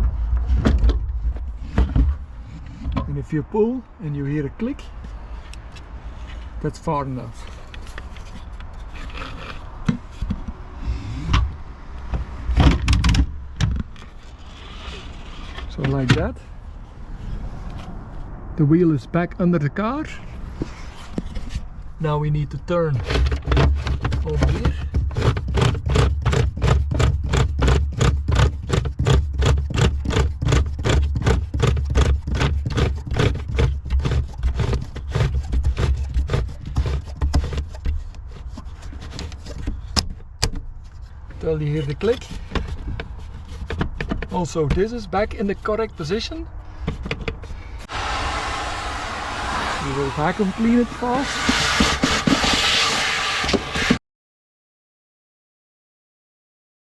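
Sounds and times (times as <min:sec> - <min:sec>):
low rumble: 0:47.8 - 0:52.4.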